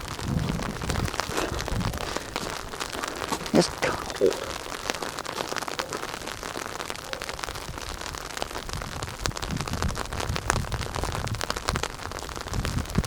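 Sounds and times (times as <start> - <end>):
sleet pattering: 0.0 - 6.7.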